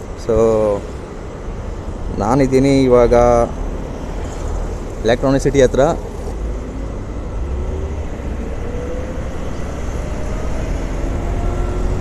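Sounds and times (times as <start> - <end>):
road and wind noise: 0.0 - 12.0
wind rumble on microphone: 1.6 - 12.0
electric motor whine rising: 6.4 - 12.0.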